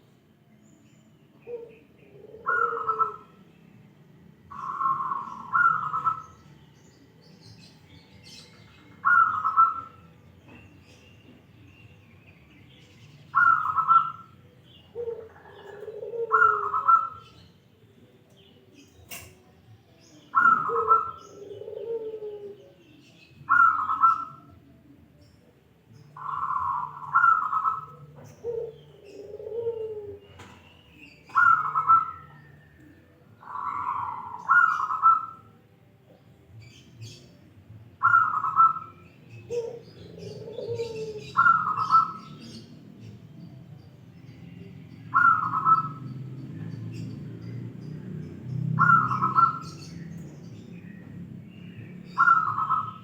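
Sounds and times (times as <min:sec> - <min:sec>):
dove cooing: 0:01.4 - 0:03.5, 0:04.5 - 0:06.5, 0:08.3 - 0:10.7, 0:13.3 - 0:17.5, 0:20.3 - 0:22.8, 0:23.4 - 0:24.6, 0:26.1 - 0:37.2, 0:37.9 - 0:42.8, 0:44.6 - 0:47.2, 0:48.8 - 0:50.6, 0:52.1 - 0:53.0.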